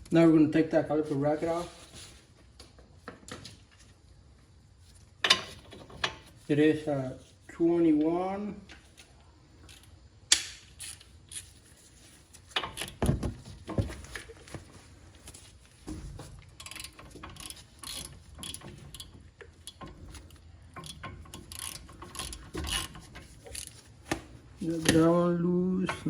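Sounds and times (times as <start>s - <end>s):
hand ratchet clicking: 16.6s - 23.8s.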